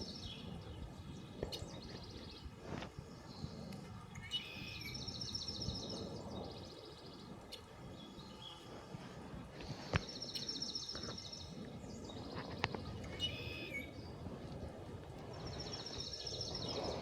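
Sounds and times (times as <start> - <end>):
low outdoor background noise: 0.0 - 17.0
songbird high trill: 4.2 - 6.0, 13.0 - 14.0
bird chirps: 4.2 - 8.7, 10.0 - 14.1.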